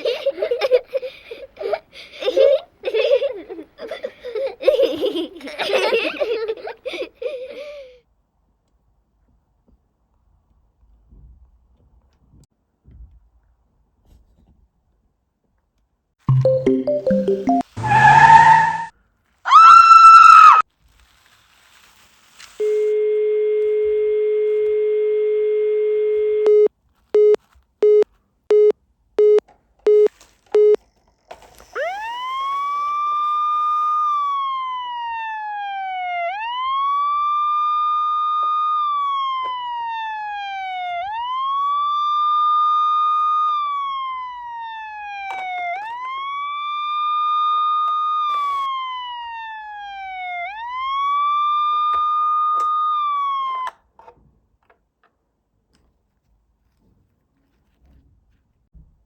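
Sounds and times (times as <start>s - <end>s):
telephone dial tone: 16.3s - 17.6s, 22.6s - 30.8s
short beeps: 16.3s - 17.7s, 26.3s - 30.8s
siren wailing: 16.3s - 18.9s, 19.5s - 20.6s, 31.7s - 53.7s.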